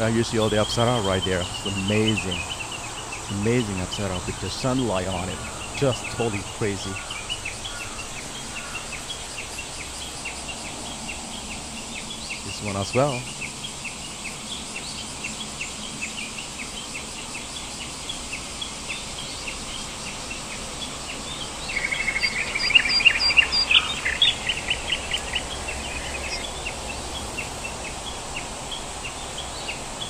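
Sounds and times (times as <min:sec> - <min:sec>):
bird chattering trill: 0:00.0 - 0:09.2, 0:20.9 - 0:27.3
birds chirping: 0:00.0 - 0:30.0
faint high insect whine: 0:00.0 - 0:30.0.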